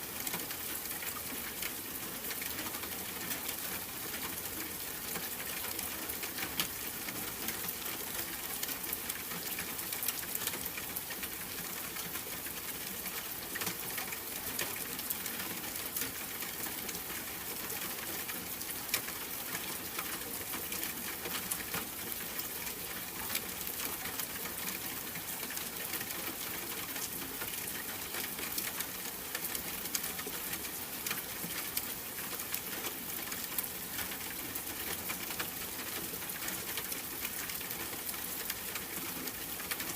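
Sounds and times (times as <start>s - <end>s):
steady rain: 0.0s - 39.9s
raindrop ticks: 0.2s - 39.9s.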